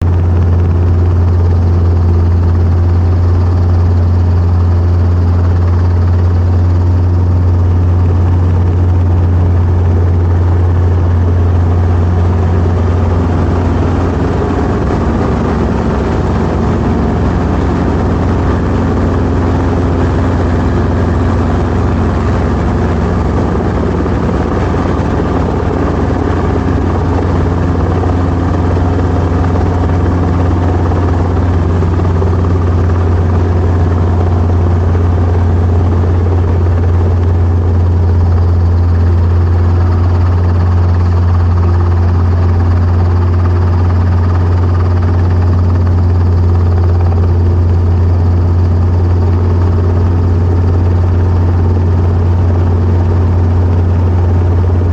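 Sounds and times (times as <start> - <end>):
helicopter rotor and engine: 0.0 - 54.9.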